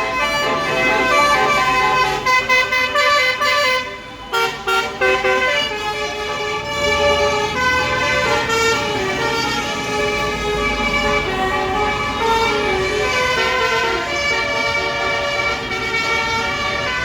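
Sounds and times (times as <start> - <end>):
multi-trumpet air horn melody: 0.0 - 17.0.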